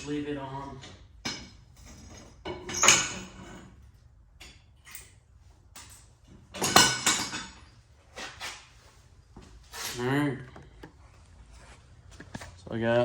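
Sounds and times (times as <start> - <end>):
metal clanks and knocks: 5.9 - 7.8.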